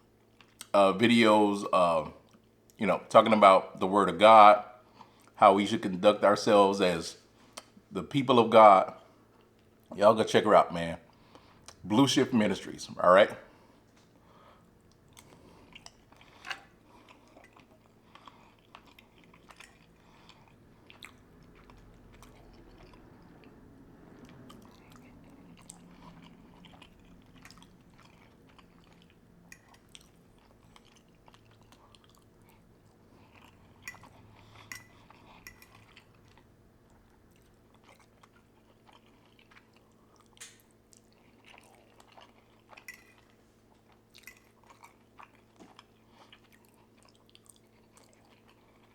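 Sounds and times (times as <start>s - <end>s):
man chewing food: 0.0s - 0.8s, 11.1s - 11.9s, 13.2s - 48.9s.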